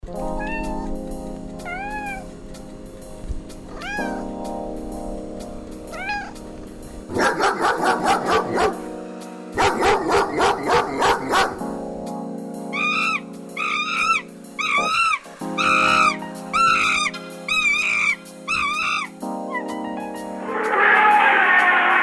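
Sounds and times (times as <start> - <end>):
background music with sustained notes: 0.0 - 22.0
cat meowing: 0.3 - 1.0, 1.6 - 2.3, 3.7 - 4.3, 5.9 - 6.4, 12.8 - 19.1
dog barking rapidly: 7.1 - 9.0, 9.6 - 11.8, 12.8 - 19.7.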